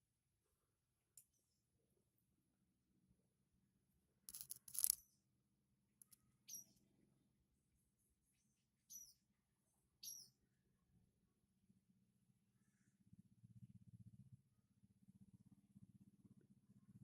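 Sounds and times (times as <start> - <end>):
high bird chirps: 6.5 - 6.8, 8.9 - 9.2, 10.0 - 10.3.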